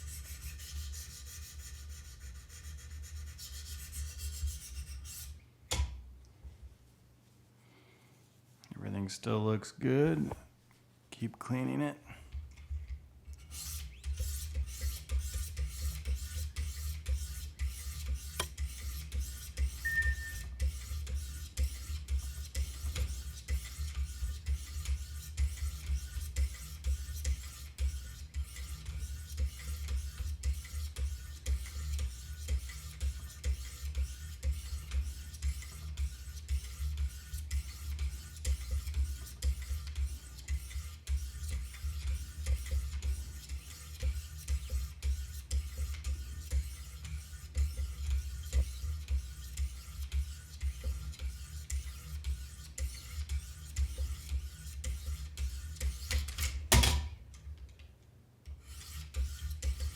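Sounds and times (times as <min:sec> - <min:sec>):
sharpening stones rasping on knife: 0:58.6 - 0:59.9.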